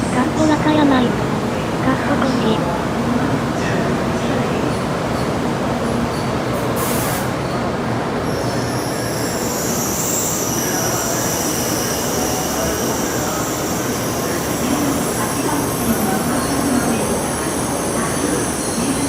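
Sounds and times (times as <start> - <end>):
train rumbling: 0.0 - 19.0
steel wheels squealing on rails: 4.7 - 19.0.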